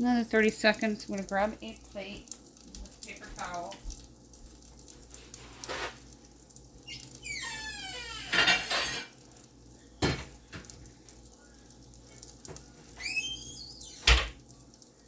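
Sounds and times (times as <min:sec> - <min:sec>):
potatoes sizzling in a pan: 0:00.0 - 0:15.0
dish squeaking: 0:06.8 - 0:09.1, 0:13.0 - 0:14.2.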